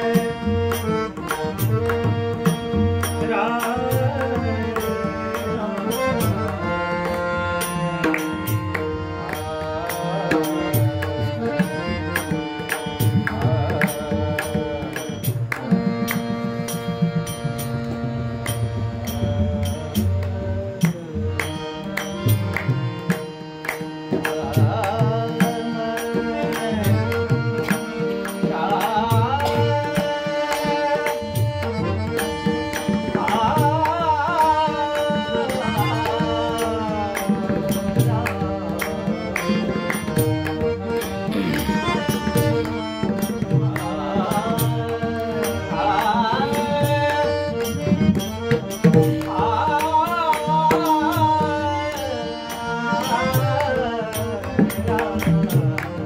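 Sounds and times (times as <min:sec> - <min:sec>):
held accompanying notes: 0:00.0 - 0:56.0
man singing ornamented phrases: 0:03.1 - 0:11.6, 0:24.2 - 0:32.4, 0:33.0 - 0:40.0, 0:41.2 - 0:48.2, 0:48.8 - 0:56.0.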